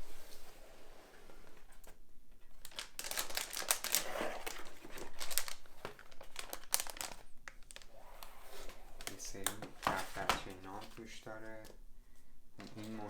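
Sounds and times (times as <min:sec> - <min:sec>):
packaging crinkling and rustling: 0:01.8 - 0:11.8.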